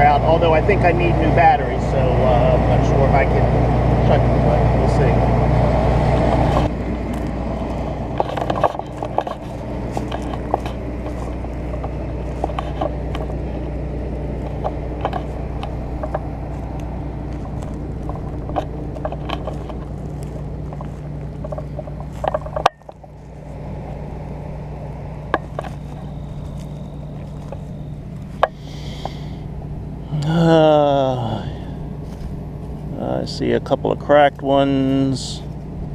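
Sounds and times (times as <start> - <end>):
combine engine hum: 0.0 - 35.9
clicks and rattles of handling: 6.2 - 13.8, 14.4 - 24.0.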